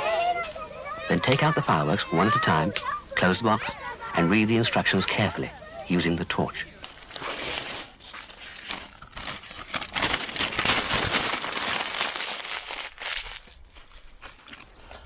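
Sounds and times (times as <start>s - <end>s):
rustling and crinkling handling: 6.5s - 15.0s.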